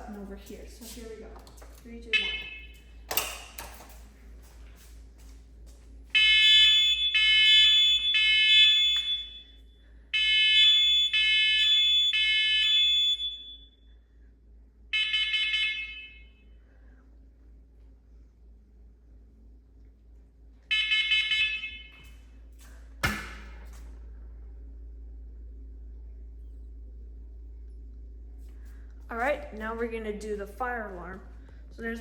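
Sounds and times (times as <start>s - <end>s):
buzzy high alarm tone: 2.0s - 3.6s, 6.1s - 14.1s, 14.9s - 16.6s, 20.7s - 22.4s.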